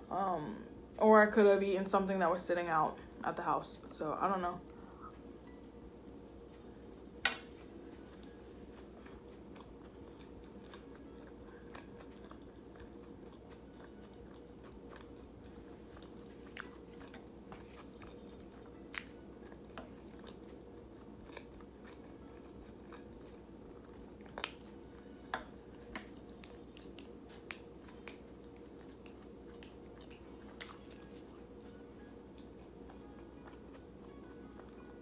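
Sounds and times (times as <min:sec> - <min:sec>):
person chewing food: 0:08.0 - 0:34.9.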